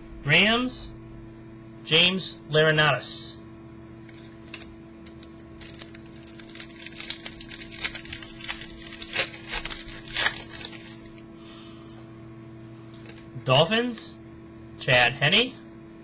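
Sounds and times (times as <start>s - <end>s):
steady electrical hum: 0.0s - 16.0s
trading cards and foil wrapper crinkling: 4.0s - 11.2s, 13.0s - 13.3s.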